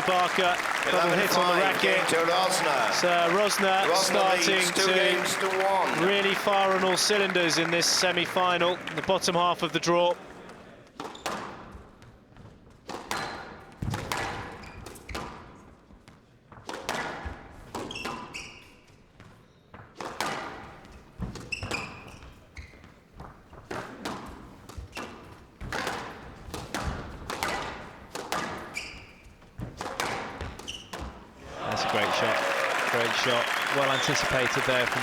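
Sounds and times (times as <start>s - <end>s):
squash ball hitting rackets and walls: 12.4s - 15.5s, 16.6s - 18.6s, 19.3s - 22.3s, 23.6s - 31.3s
shoe squeaks: 21.4s - 22.9s, 28.7s - 29.4s, 30.6s - 31.1s.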